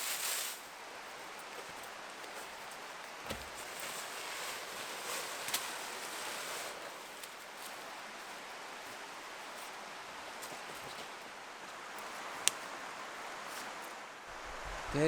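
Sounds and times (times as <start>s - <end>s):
rustling and handling: 0.0s - 14.0s
soft thump: 3.3s - 3.6s.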